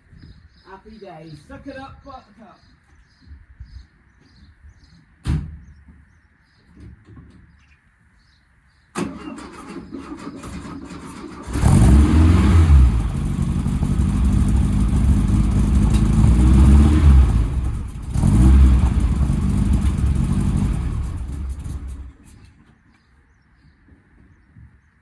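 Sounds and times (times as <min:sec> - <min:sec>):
air-cooled engine revving: 0:09.0 - 0:22.4.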